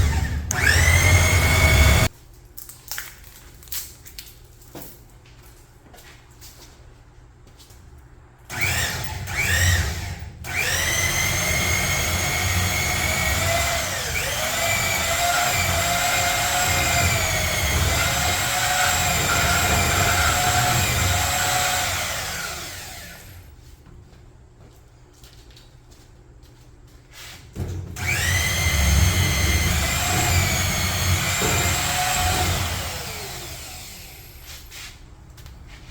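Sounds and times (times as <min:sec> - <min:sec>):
power tool motor whining: 0:00.0 - 0:02.1, 0:08.5 - 0:23.4, 0:28.0 - 0:34.4.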